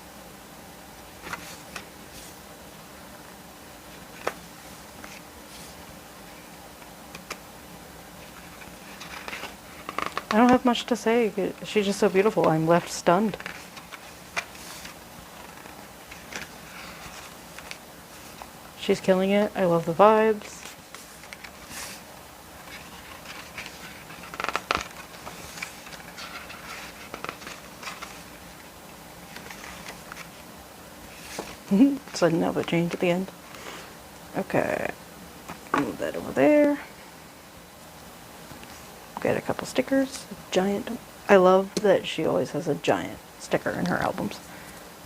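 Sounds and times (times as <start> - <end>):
faint steady hum: 0.0 - 45.0
paper pages rustling: 1.2 - 2.4, 3.9 - 5.8, 8.2 - 10.9, 11.8 - 18.5, 20.3 - 33.0.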